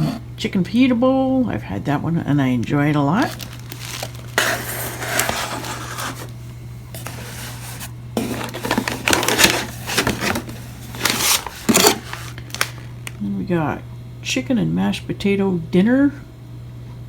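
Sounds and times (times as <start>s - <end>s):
foil pouches crinkling: 2.8s - 13.2s.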